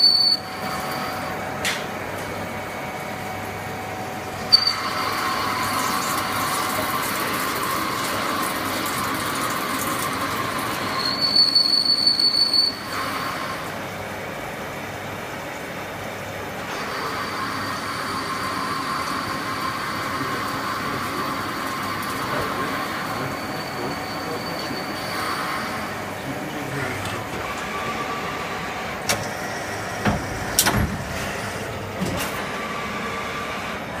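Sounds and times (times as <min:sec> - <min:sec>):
lathe machine running: 0:00.5 - 0:11.6, 0:12.8 - 0:34.0.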